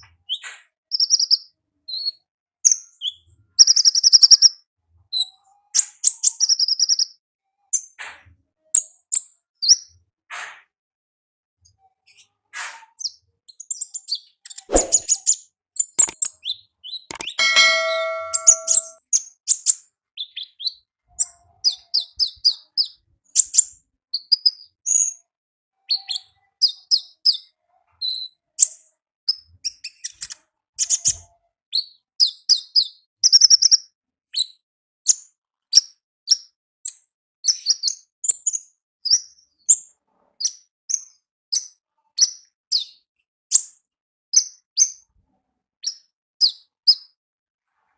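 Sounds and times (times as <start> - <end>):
ringing tone: 17.1 - 19.0.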